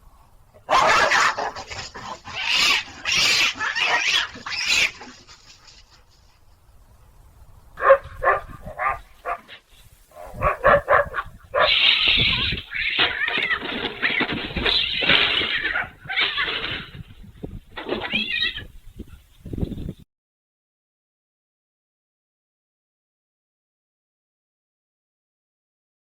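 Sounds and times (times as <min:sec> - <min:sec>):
harsh animal calls: 0:00.6 - 0:05.8, 0:10.1 - 0:17.0.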